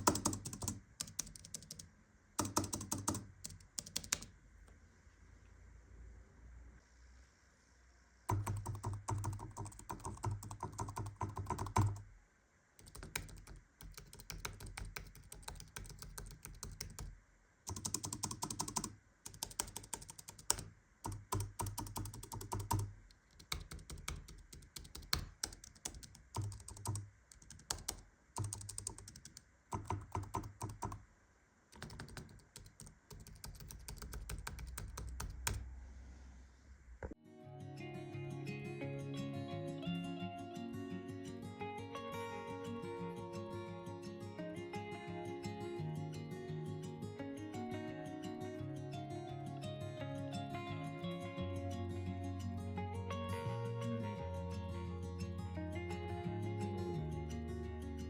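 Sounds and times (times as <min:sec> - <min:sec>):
keyboard typing clicks: 0:00.0 - 0:04.3, 0:08.3 - 0:12.0, 0:12.8 - 0:17.1, 0:17.7 - 0:31.0, 0:31.8 - 0:35.6.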